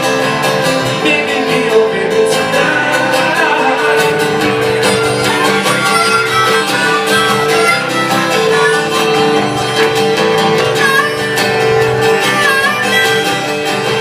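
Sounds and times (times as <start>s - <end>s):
acoustic guitar strumming: 0.0s - 14.0s
string instrument melody: 0.0s - 14.0s.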